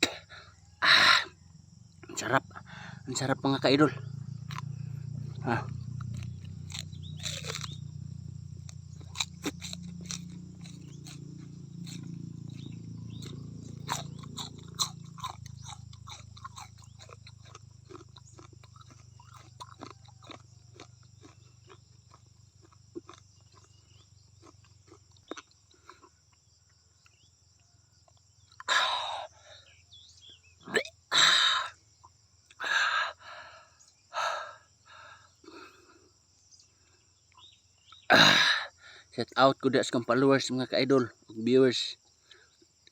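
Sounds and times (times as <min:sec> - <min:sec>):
person chewing and crunching: 0:04.3 - 0:27.2
wet mouth clicks: 0:09.1 - 0:20.4.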